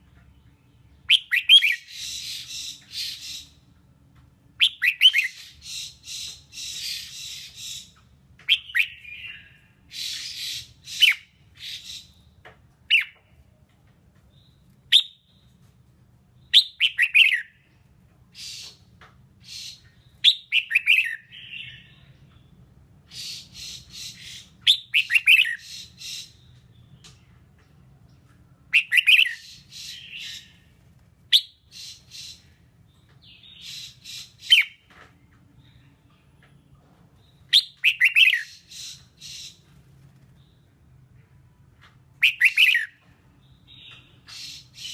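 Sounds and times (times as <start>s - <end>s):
bird singing bright phrases: 0.0s - 13.6s, 14.2s - 41.4s, 42.1s - 44.9s.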